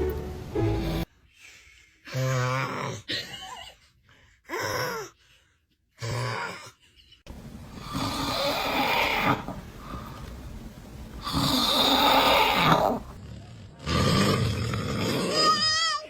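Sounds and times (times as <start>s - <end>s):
man snoring: 7.3s - 13.2s.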